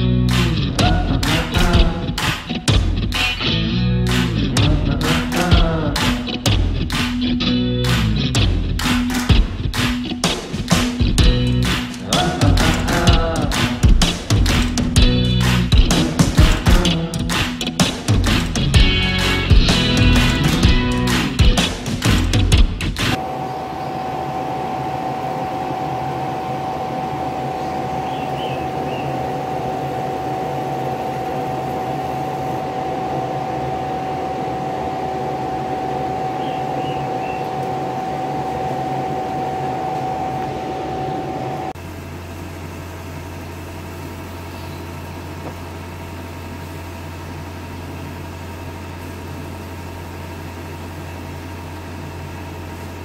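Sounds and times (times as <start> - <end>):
high machine whine: 0.0 - 53.0
laser engraving machine running: 23.2 - 53.0.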